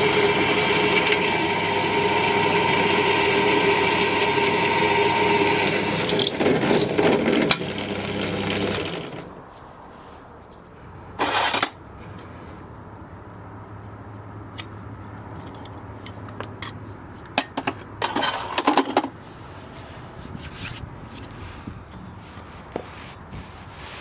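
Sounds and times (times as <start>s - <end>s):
metal tools scraping: 0.0s - 9.3s, 11.2s - 12.2s, 17.4s - 19.1s, 20.3s - 23.4s
metal tools clinking: 5.8s - 9.2s, 11.2s - 12.0s, 17.4s - 19.1s.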